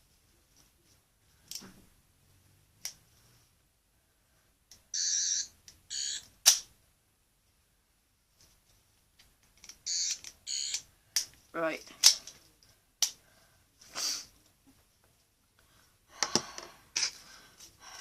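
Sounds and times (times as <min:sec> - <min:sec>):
high buzzing toy tones: 0:05.0 - 0:06.3, 0:09.9 - 0:10.8.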